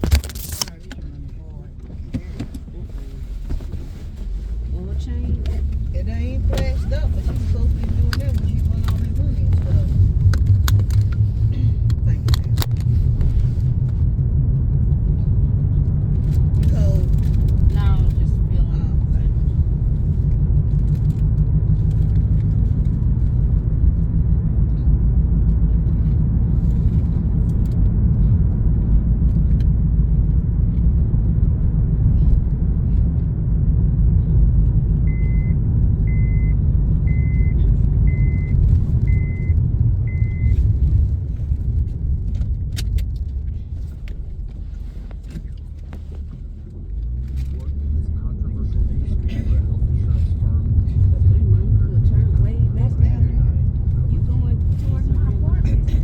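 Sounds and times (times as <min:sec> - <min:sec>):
engine and road rumble: 0:00.0 - 0:56.0
short high-pitched beeps: 0:35.1 - 0:40.6.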